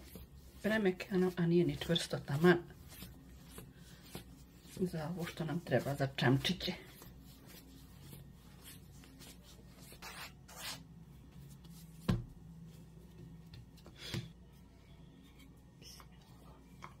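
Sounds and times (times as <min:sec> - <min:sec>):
rolling pin rubbing dough: 0:00.0 - 0:12.0.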